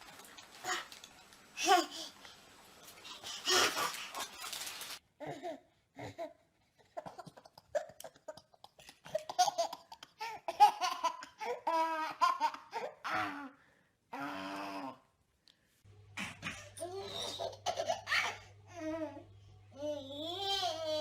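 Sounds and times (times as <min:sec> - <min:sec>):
baby laughing: 0:01.6 - 0:02.2, 0:06.9 - 0:13.4, 0:16.3 - 0:18.9.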